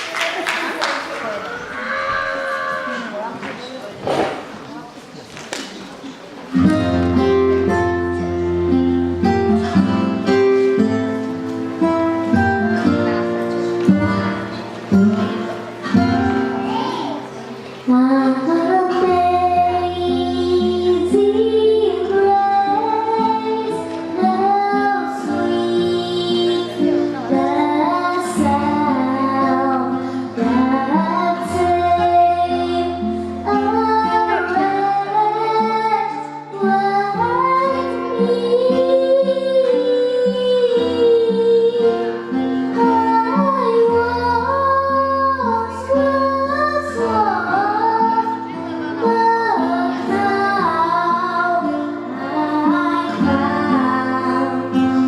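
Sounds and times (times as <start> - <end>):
instrumental accompaniment: 6.5 - 55.0
young woman singing: 17.8 - 55.0.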